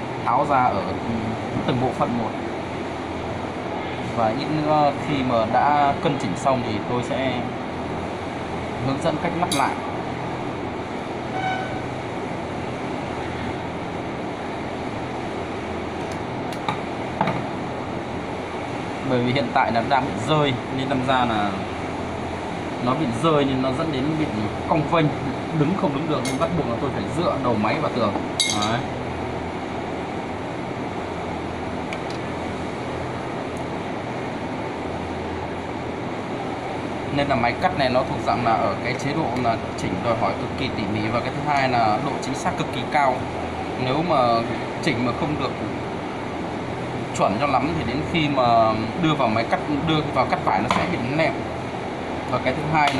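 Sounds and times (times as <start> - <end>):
machinery humming: 0.0 - 52.9
steady background noise: 0.0 - 52.9
faint tone: 11.3 - 12.0.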